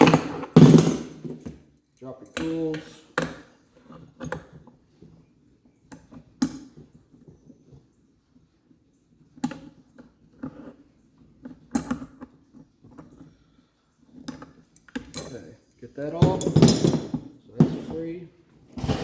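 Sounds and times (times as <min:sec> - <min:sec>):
metal wrench clanks: 0:15.0 - 0:15.4, 0:16.2 - 0:17.2.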